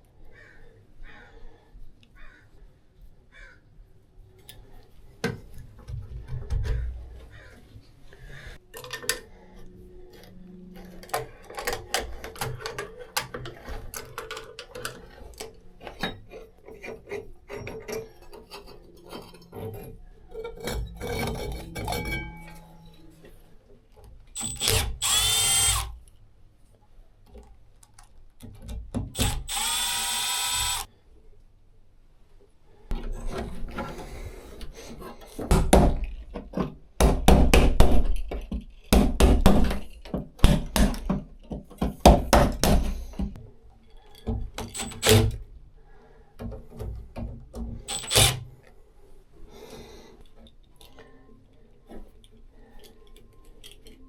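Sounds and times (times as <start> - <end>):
small power drill whirring: 24.4 - 26.0, 29.2 - 30.9, 44.8 - 45.2, 47.9 - 48.4.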